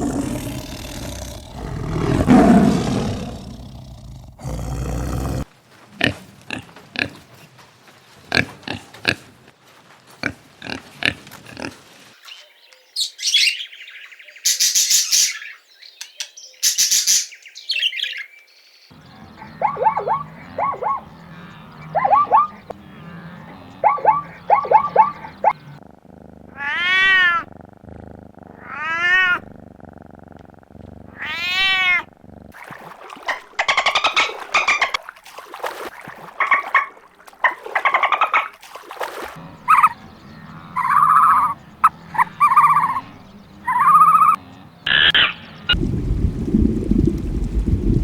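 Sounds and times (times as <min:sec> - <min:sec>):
short animal calls: 0:19.2 - 0:25.8
cat meowing: 0:26.6 - 0:27.5, 0:28.6 - 0:29.4, 0:31.1 - 0:32.1.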